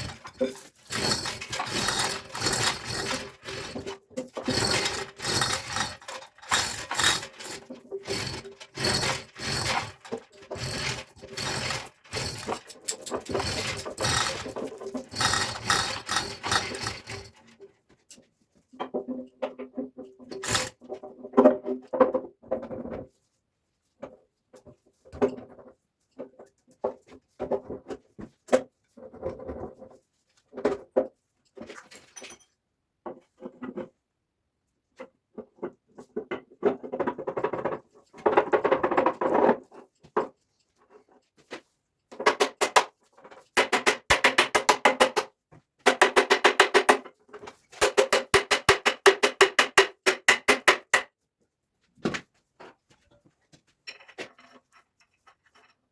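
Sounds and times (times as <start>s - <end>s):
fast metal tapping: 0.0s - 17.3s.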